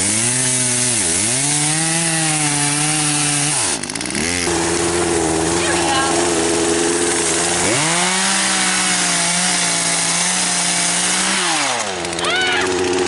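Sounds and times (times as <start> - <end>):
chainsaw revving: 0.0 - 13.0.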